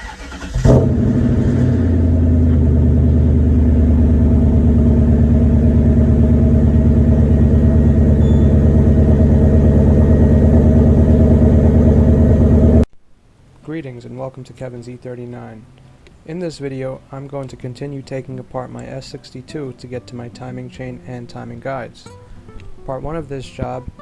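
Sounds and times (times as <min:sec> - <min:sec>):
car engine starting and idling: 0:00.0 - 0:12.9.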